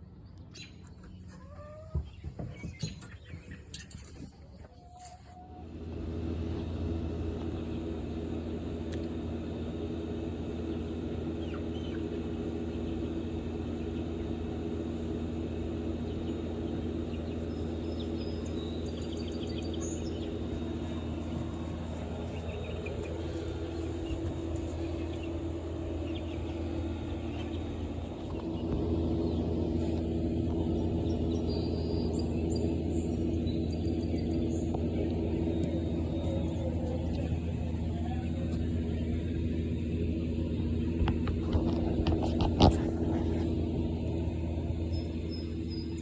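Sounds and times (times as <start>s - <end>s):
small birds chirping: 0.0s - 5.7s, 7.4s - 46.0s
low mechanical hum: 0.0s - 46.0s.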